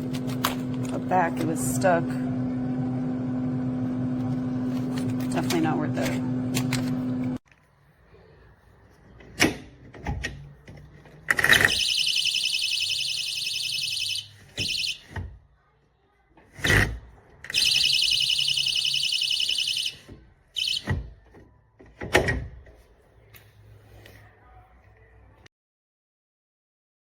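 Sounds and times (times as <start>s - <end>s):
short alarm chirps: 11.7s - 15.0s, 17.6s - 20.0s, 20.6s - 21.0s
shrill pulsing alarm tone: 11.7s - 15.0s, 17.6s - 21.0s.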